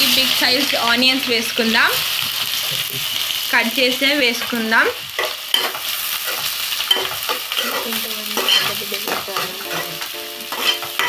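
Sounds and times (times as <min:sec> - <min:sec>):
onions sizzling in oil: 0:00.0 - 0:11.0
spoon scraping a pan: 0:04.4 - 0:11.0.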